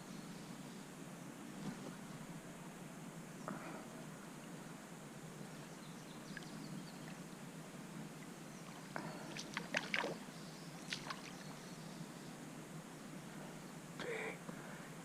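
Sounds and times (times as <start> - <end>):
water lapping in creek: 5.5 - 11.8
short sharp splashes: 9.3 - 10.2, 10.9 - 11.4.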